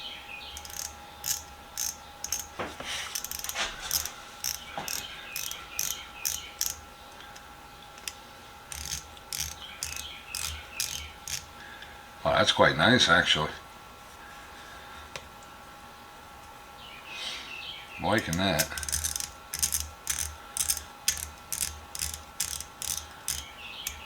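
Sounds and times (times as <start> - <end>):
ratchet clicking: 0.6 - 11.5, 18.2 - 24.0.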